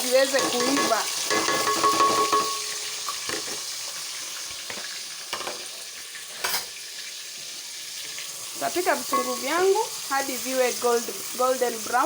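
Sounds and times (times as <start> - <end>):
onions sizzling in oil: 0.0 - 12.0
spoon knocking while stirring: 0.4 - 3.6.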